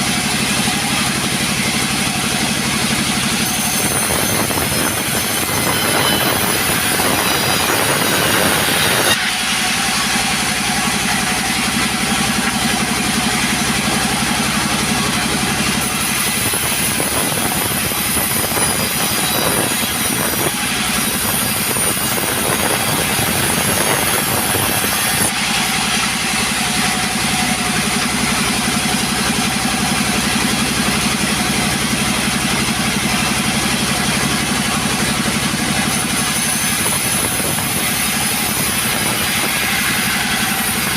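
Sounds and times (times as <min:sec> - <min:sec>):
chainsaw cutting timber: 0:00.0 - 0:40.9.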